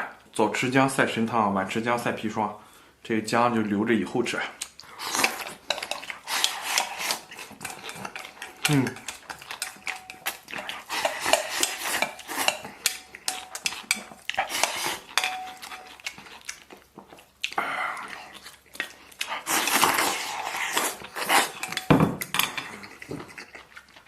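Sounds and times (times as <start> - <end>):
utensils scraping a bowl: 5.0 - 16.5, 19.2 - 23.0.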